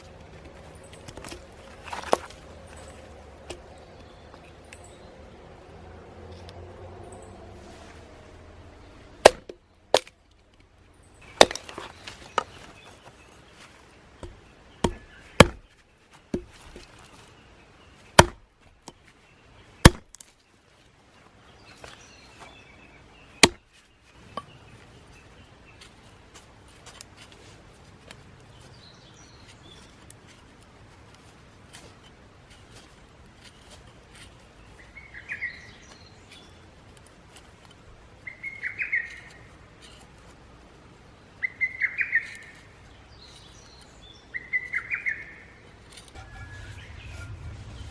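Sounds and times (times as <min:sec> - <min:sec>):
hand axe chopping log: 0:09.2 - 0:10.1, 0:11.4 - 0:11.9, 0:14.2 - 0:15.7, 0:16.3 - 0:16.9, 0:18.2 - 0:19.0, 0:19.8 - 0:20.2, 0:23.4 - 0:23.7.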